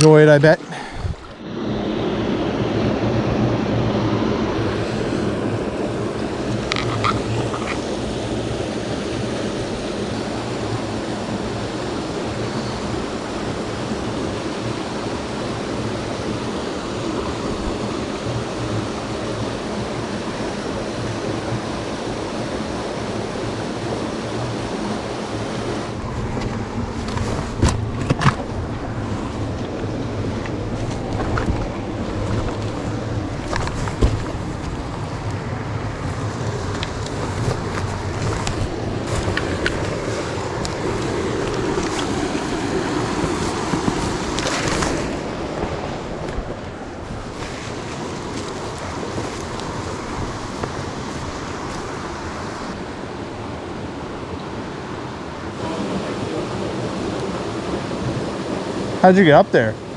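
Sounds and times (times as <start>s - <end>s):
brook flowing over stones: 5.8s - 13.7s, 25.8s - 52.8s.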